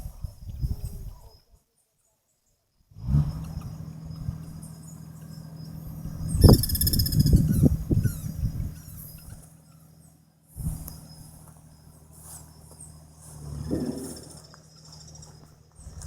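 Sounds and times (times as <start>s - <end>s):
guineafowl harsh chattering calls: 6.4s - 9.8s.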